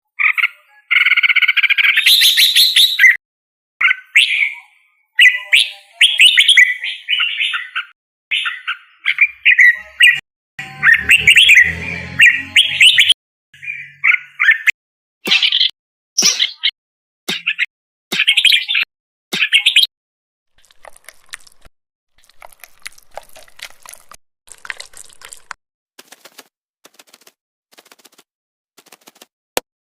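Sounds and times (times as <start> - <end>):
bird chirps and warbling trills: 3.8 - 14.7, 15.3 - 19.9.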